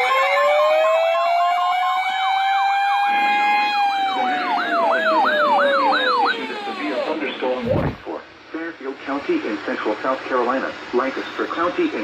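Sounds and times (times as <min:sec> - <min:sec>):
fast yelp siren sweeps: 0:00.0 - 0:08.0
siren wail rising and falling: 0:00.0 - 0:08.0.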